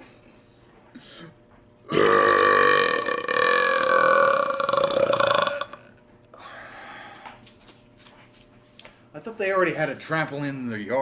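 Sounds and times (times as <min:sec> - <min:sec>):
person belching loudly: 0:01.9 - 0:06.0.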